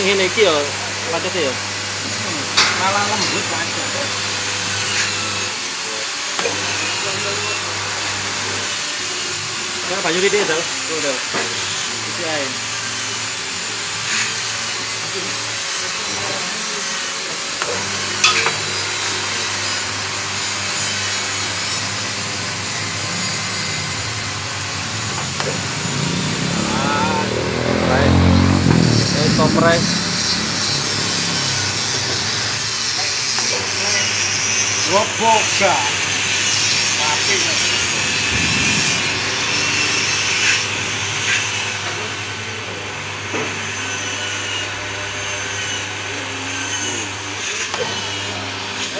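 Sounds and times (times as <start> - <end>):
pressing machine grinding: 0.0 - 8.9, 9.6 - 48.9.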